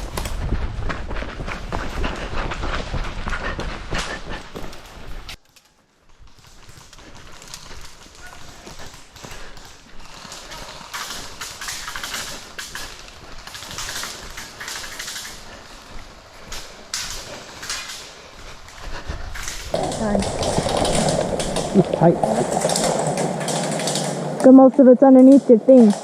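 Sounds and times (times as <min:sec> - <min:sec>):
footsteps: 0:00.0 - 0:26.0
rustling: 0:00.0 - 0:26.0.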